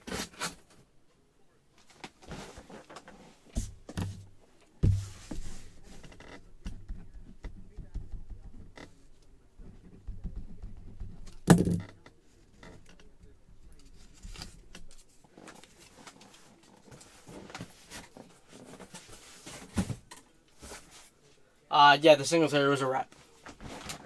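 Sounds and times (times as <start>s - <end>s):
knocks clicks and rustles of handling: 1.8s - 20.9s.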